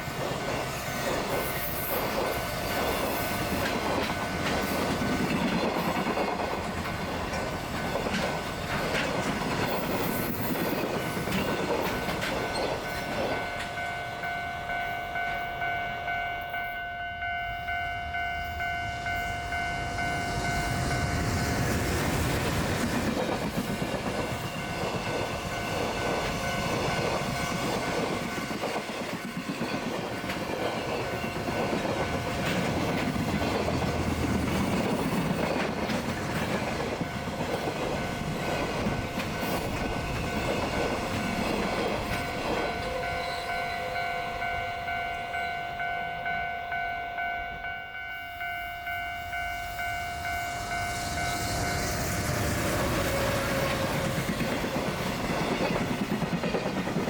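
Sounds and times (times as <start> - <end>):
train wheels clattering on rails: 0.0 - 14.4, 19.6 - 45.0, 49.9 - 57.0
level crossing bell ringing: 11.9 - 21.2, 42.2 - 51.4.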